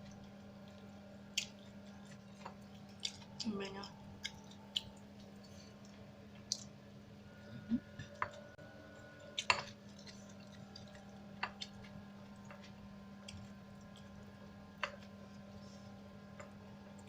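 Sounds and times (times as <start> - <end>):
wet chewing: 0.0 - 6.8, 9.3 - 15.8
steady low hum: 0.0 - 17.0.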